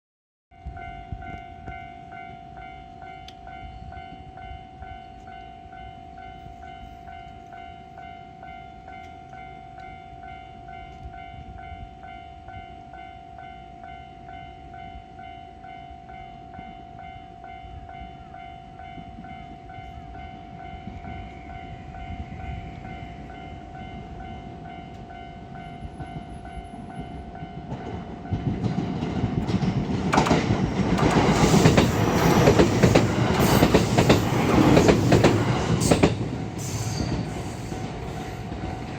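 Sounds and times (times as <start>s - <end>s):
train passing with loud rush: 0.6s - 38.9s
wheels clattering over rail joints: 27.7s - 38.9s.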